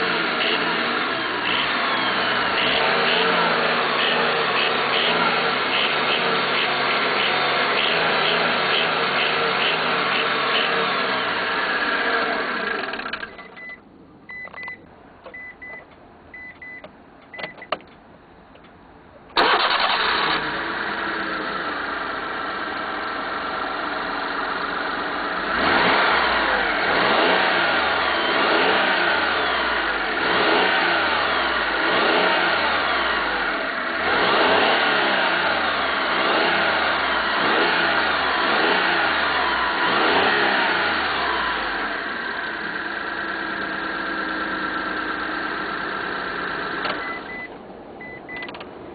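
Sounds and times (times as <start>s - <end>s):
engine running and revving: 0.0s - 13.3s, 19.4s - 47.5s
short electronic beeps: 13.3s - 17.8s, 47.0s - 48.6s
clicks: 46.8s - 47.6s, 48.3s - 48.7s.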